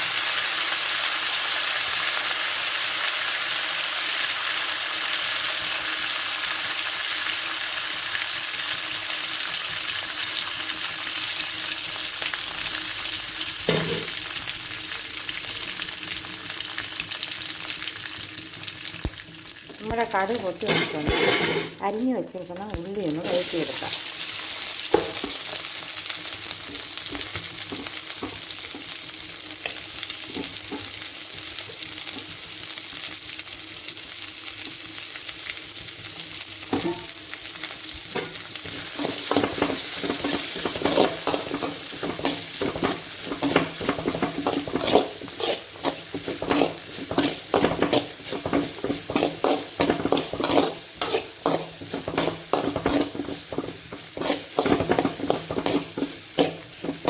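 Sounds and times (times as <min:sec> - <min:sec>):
onions sizzling in oil: 0:00.0 - 0:57.0
spatula scraping a pan: 0:20.7 - 0:21.8, 0:38.2 - 0:57.0.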